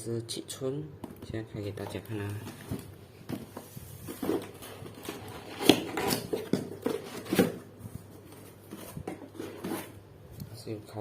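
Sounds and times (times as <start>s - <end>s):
packaging rustling: 2.0s - 10.0s
box clicks and knocks: 4.2s - 7.7s.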